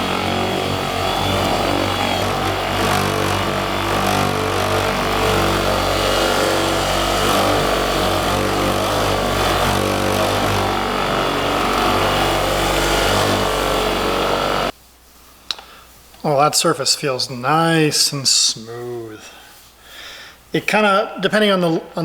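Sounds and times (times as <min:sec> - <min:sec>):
electric buffer running: 0:00.0 - 0:14.7.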